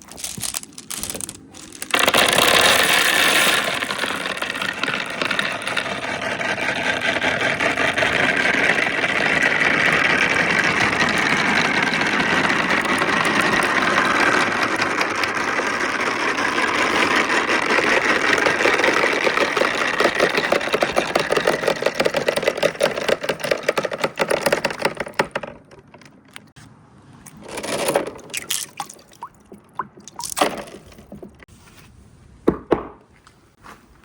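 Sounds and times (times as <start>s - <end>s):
marbles rattling down wooden run: 0.0s - 25.7s, 27.4s - 31.4s
marbles clicking on wooden track: 0.0s - 26.5s.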